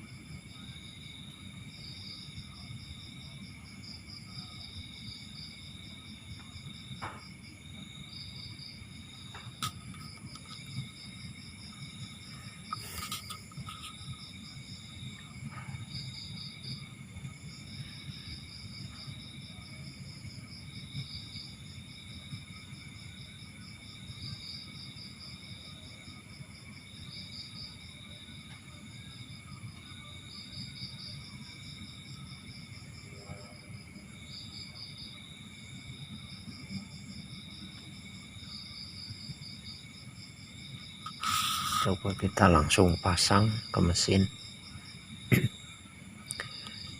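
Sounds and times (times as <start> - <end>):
insects chirping in trills: 0.0 - 46.9.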